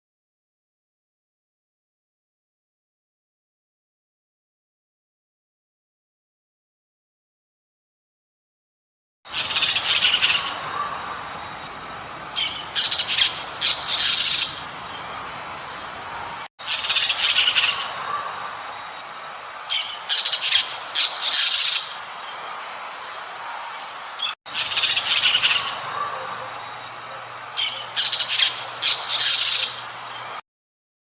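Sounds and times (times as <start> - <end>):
harsh bird squawks: 9.3 - 11.3, 12.3 - 14.8, 16.1 - 18.6, 19.7 - 22.0, 24.2 - 30.2.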